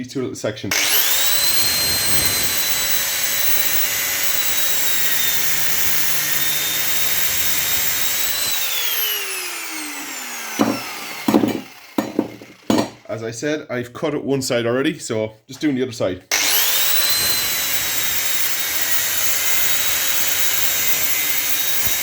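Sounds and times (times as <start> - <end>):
angle grinder cutting metal: 0.7 - 13.1, 16.3 - 22.0
sharp knocks: 10.6 - 13.0.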